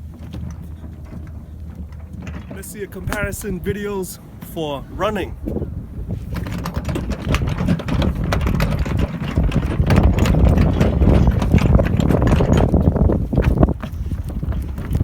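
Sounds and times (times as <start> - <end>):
constant low rumble: 0.0 - 15.0
running footsteps: 2.5 - 5.6.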